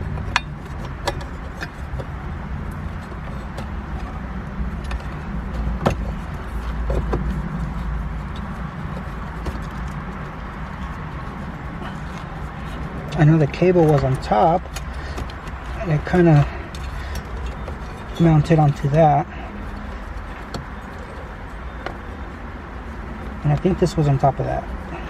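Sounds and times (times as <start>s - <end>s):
clicks and taps of parts handled: 0.0s - 4.2s, 13.1s - 15.8s.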